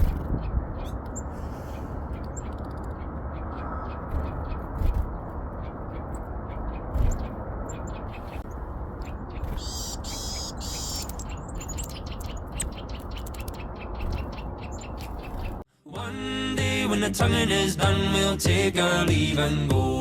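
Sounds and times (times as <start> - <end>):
low outdoor rumble: 0.0 - 15.7
small birds chirping: 0.0 - 15.7.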